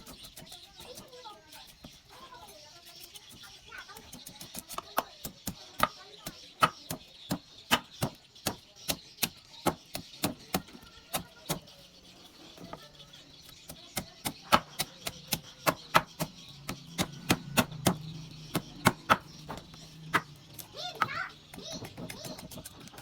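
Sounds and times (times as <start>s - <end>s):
knife chopping on cutting board: 14.0s - 20.3s.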